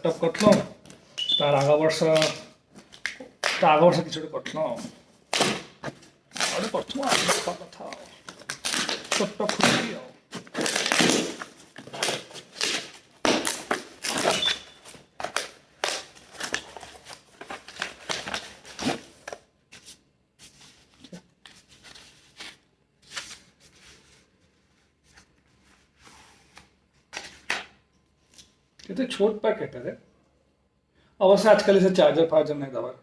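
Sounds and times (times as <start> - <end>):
packaging rustling and crinkling: 4.6 - 27.5.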